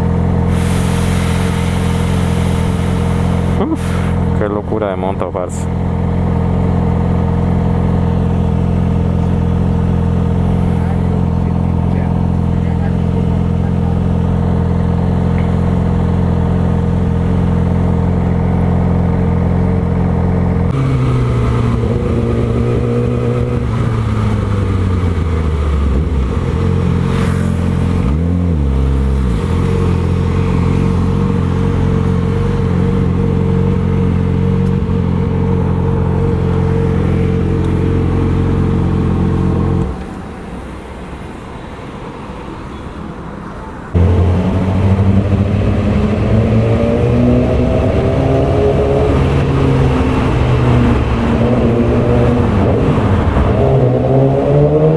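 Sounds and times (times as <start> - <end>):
motorcycle engine running: 1.7 - 40.1, 44.0 - 53.4.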